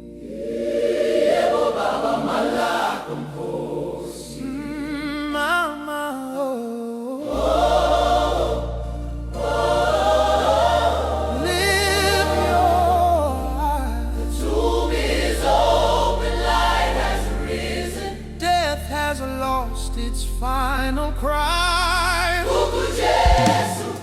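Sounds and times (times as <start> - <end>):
choir singing gospel: 0.0 - 5.4, 7.2 - 18.8, 22.4 - 24.0
sustained bass notes: 7.2 - 24.0.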